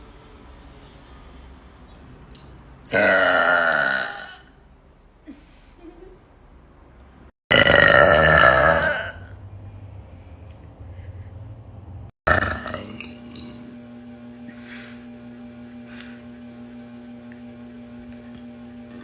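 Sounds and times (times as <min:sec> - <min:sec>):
woman burping: 0:02.9 - 0:04.5, 0:07.5 - 0:09.3, 0:12.3 - 0:13.2.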